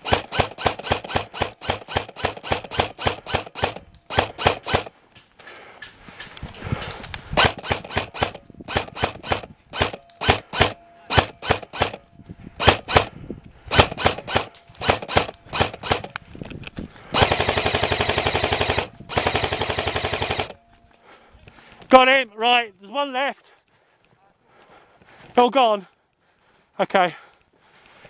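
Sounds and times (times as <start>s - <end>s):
airsoft rifle shots: 0.0s - 4.9s, 7.4s - 12.0s, 12.6s - 13.1s, 13.7s - 16.2s, 17.2s - 20.6s
full-auto airsoft bursts: 0.0s - 4.9s, 6.8s - 12.0s, 12.6s - 16.2s, 17.1s - 20.6s.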